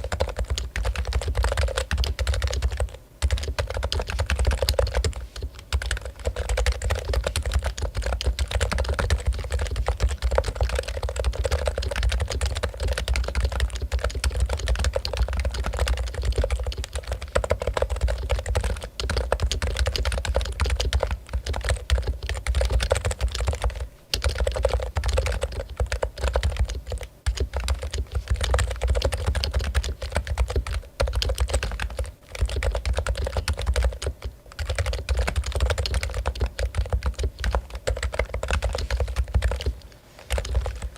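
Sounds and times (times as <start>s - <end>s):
fast typing on keyboard: 0.0s - 40.9s.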